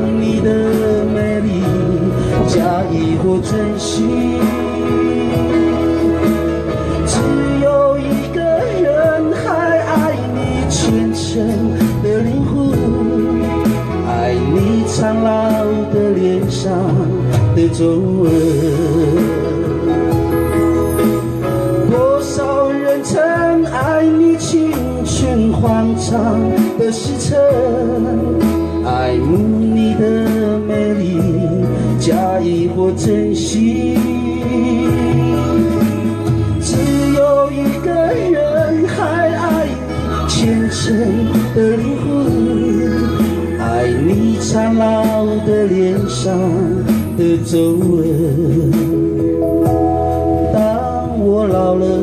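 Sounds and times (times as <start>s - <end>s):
backing music with bass and cymbals: 0.0s - 52.0s
man singing pop song: 0.0s - 52.0s.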